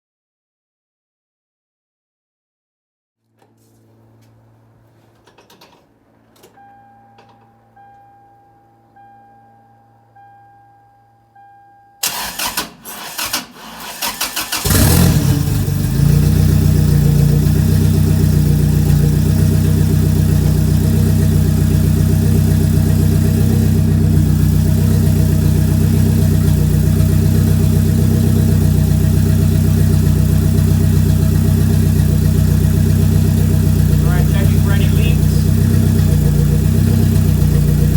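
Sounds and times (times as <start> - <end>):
car engine cranking and idling: 12.0 - 37.9.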